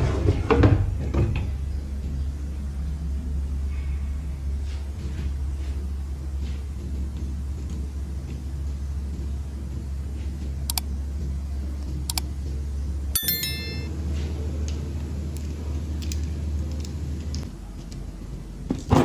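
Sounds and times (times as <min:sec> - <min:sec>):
steady low hum: 0:00.0 - 0:19.0
metal pieces clinking: 0:13.2 - 0:13.9.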